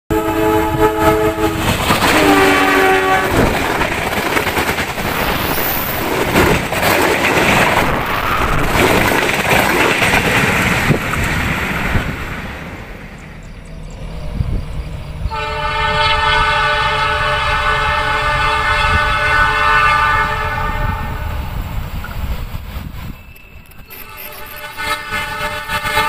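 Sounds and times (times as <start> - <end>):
train horn blasts: 0.1 - 3.6, 15.3 - 21.5, 23.9 - 26.0
train rumbling: 0.1 - 26.0
wheels clacking over rails: 1.6 - 13.9.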